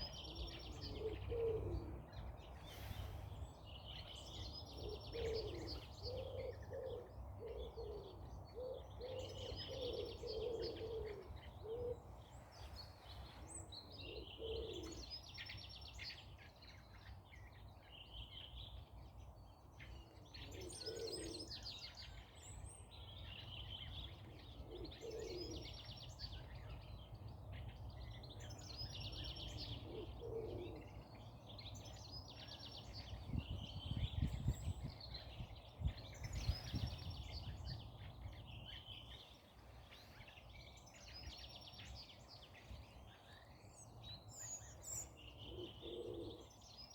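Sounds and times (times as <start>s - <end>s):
low cooing calls: 0.0s - 15.2s, 20.2s - 22.3s, 23.8s - 26.8s, 28.4s - 31.2s, 44.3s - 46.9s
birds singing: 0.0s - 46.9s.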